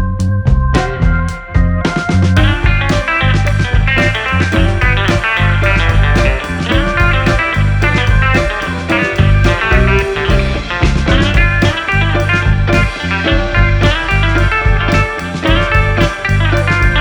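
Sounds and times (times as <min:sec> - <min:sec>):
guitar music with steady beat: 0:00.4 - 0:17.0.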